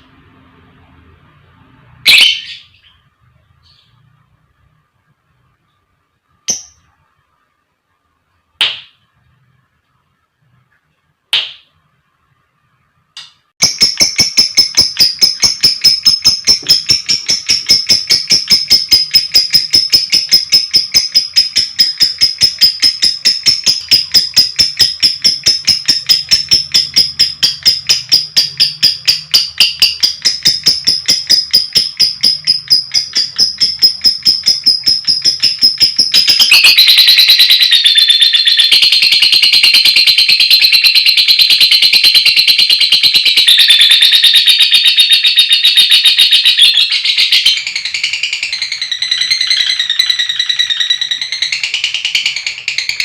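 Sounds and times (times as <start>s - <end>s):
lovebird chirping and trilling: 1.9s - 4.6s, 6.4s - 7.2s, 13.6s - 53.0s.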